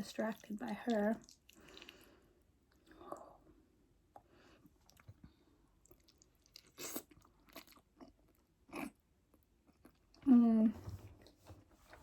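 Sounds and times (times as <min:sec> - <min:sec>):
person chewing food: 0:00.9 - 0:03.5, 0:04.1 - 0:10.3.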